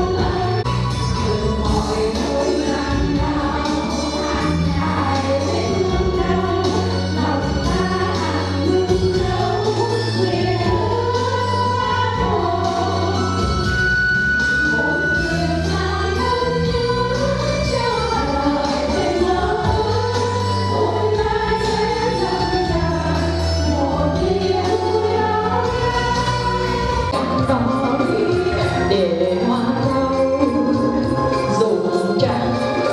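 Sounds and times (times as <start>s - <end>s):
group singing with band: 0.0s - 29.0s.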